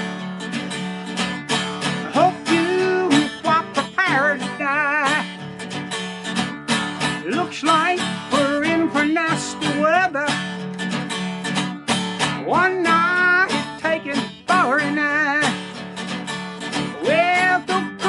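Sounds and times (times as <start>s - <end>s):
acoustic guitar strumming: 0.0s - 18.0s.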